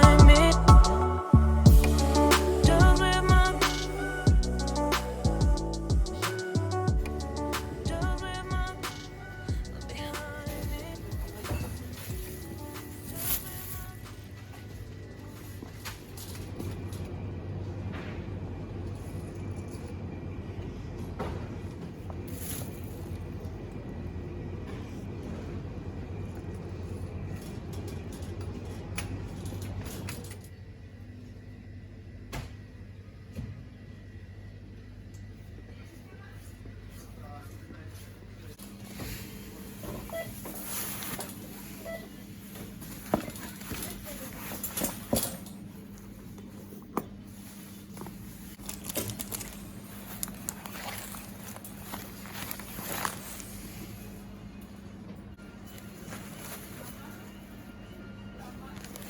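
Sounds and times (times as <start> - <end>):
low engine hum: 0.0 - 12.7
steady low hum: 0.0 - 59.0.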